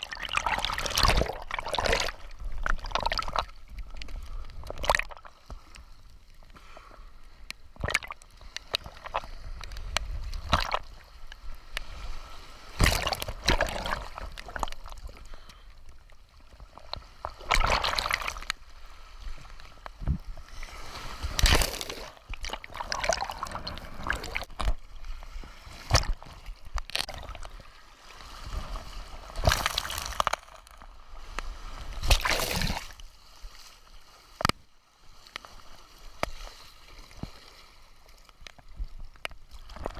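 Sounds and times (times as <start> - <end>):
sea water sloshing: 0.0 - 39.9
loud water splashes: 12.7 - 14.2, 32.0 - 33.0.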